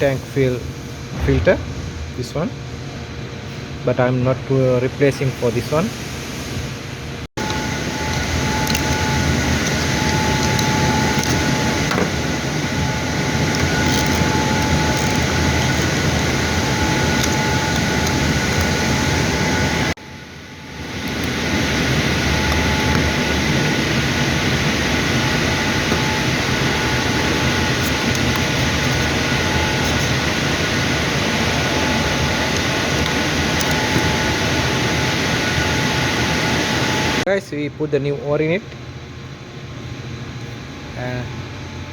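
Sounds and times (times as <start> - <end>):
loud machine noise with whining tones: 0.0 - 5.9, 6.9 - 37.3.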